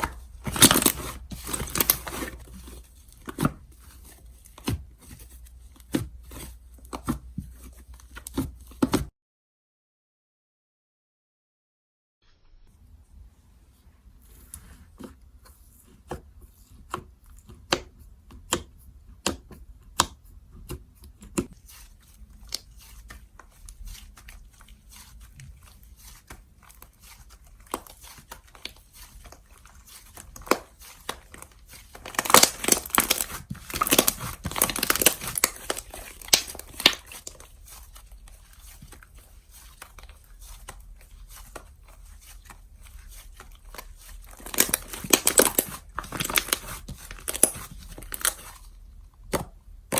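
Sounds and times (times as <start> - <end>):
slime crackling and tearing: 0.0 - 2.5, 22.3 - 48.7.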